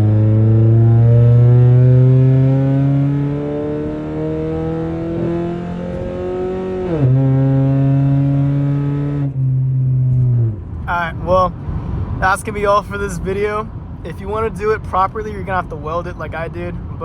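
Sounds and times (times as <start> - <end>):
car engine accelerating: 0.0 - 12.6.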